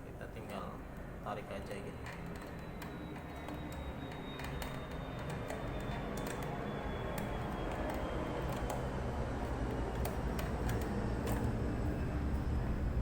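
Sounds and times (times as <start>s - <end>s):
faint high whine: 0.0s - 13.0s
steady low hum: 0.0s - 13.0s.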